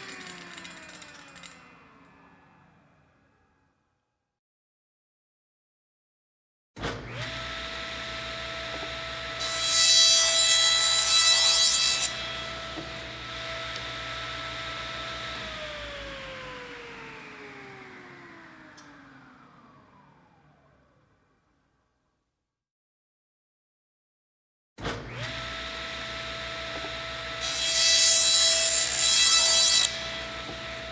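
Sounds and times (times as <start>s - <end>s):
electric saw motor running: 0.0s - 3.2s, 7.1s - 20.9s, 25.1s - 30.9s
saw rasping through material: 8.7s - 13.2s, 26.6s - 30.9s.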